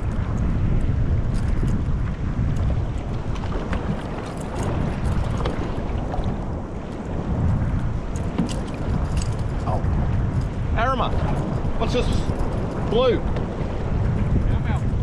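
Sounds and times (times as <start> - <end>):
faint water sounds: 0.0 - 15.0
wind buffeting microphone: 0.0 - 15.0.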